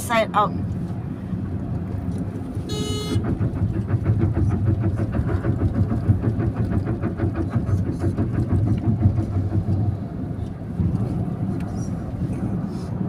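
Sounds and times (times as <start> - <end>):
road and engine rumble in car: 0.0 - 13.0
short beep: 2.7 - 3.2.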